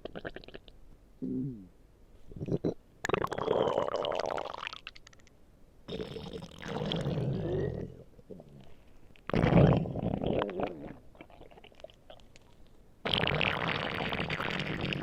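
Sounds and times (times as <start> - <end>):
stomach growling: 2.4 - 4.6, 5.9 - 12.4, 13.1 - 15.0.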